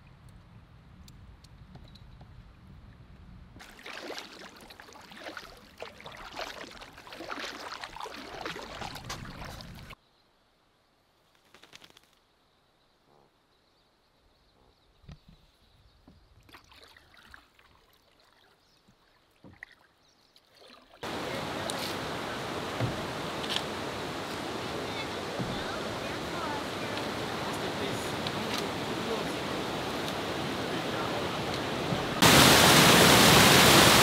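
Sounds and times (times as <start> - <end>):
water splashing and rushing: 3.6 - 10.0, 20.5 - 34.0.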